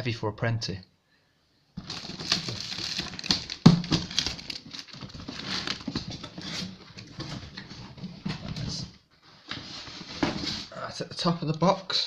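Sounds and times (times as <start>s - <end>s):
cardboard box rustling: 1.8s - 8.7s.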